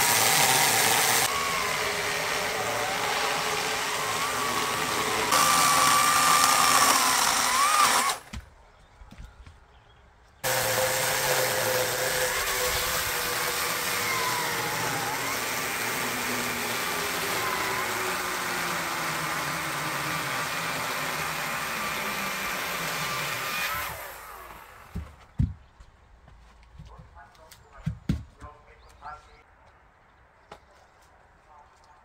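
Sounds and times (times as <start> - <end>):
chainsaw cutting a log: 0.0 - 8.3, 10.4 - 25.0.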